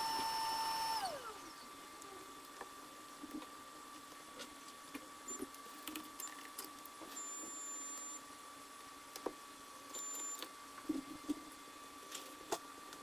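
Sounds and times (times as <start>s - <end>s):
steady high whine: 0.0s - 1.7s.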